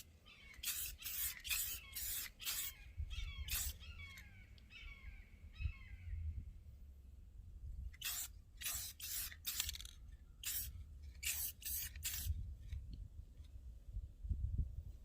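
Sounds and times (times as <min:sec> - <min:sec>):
aerosol can spraying: 0:00.6 - 0:02.7, 0:03.5 - 0:03.8, 0:08.0 - 0:09.8, 0:10.4 - 0:12.3.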